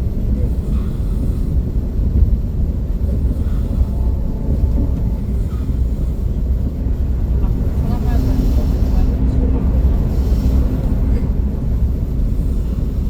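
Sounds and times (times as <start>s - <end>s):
train cabin low rumble: 0.0s - 13.0s.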